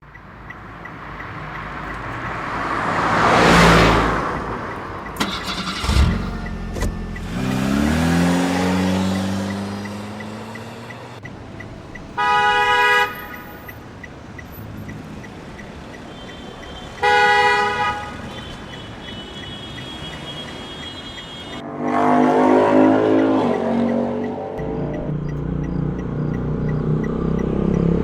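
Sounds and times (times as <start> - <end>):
road traffic: 0.0 - 28.0
loud vehicle engine: 0.7 - 15.6, 21.3 - 28.0
car horn blasts: 12.1 - 13.7, 16.1 - 24.0.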